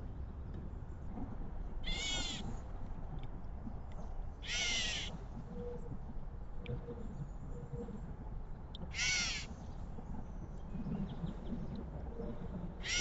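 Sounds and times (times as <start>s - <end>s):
harsh crow-like bird call: 1.9s - 2.4s, 4.4s - 5.1s, 8.9s - 9.5s.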